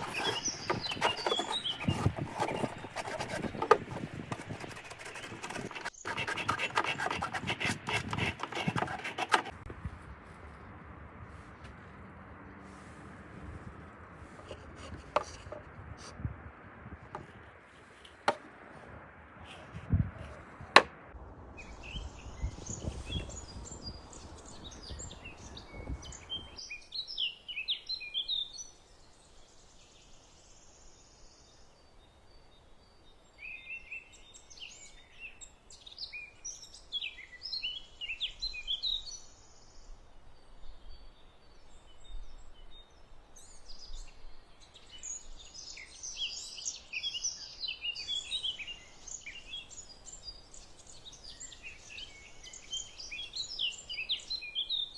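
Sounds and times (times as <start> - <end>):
hand sanding wood: 0.0 - 9.6
small birds chirping: 0.0 - 9.6, 21.6 - 54.9.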